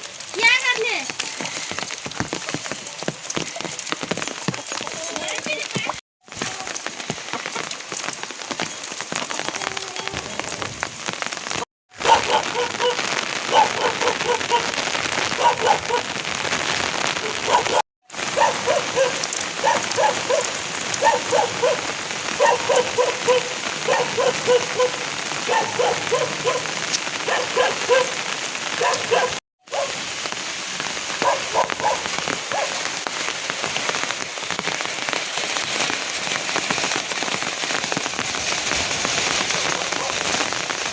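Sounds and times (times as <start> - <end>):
pitched taps and drips: 0.0 - 11.2
rain falling: 0.0 - 40.9.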